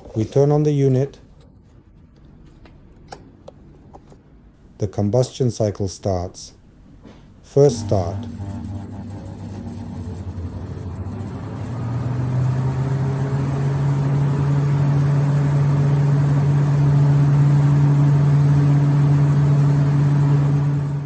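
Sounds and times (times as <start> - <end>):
burner motor humming: 6.7 - 21.0.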